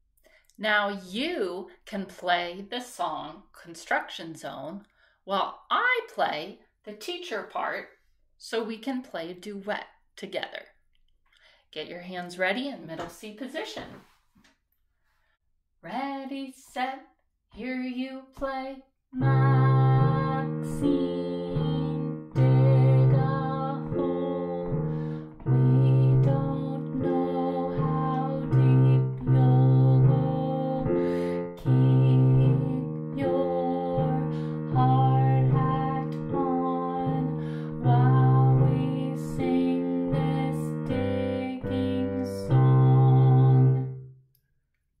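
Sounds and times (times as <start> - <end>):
piano chords: 19.2 - 44.1.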